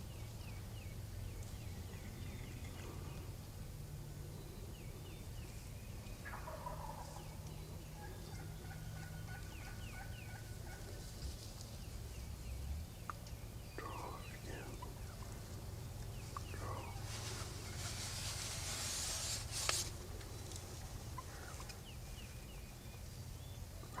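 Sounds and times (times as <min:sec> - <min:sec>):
wild turkey gobbling: 0:06.2 - 0:11.3, 0:13.8 - 0:21.8, 0:23.8 - 0:24.0.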